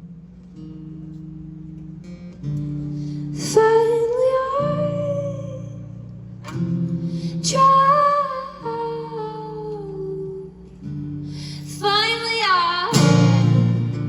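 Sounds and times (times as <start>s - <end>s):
guitar chords ringing: 0.0s - 14.0s.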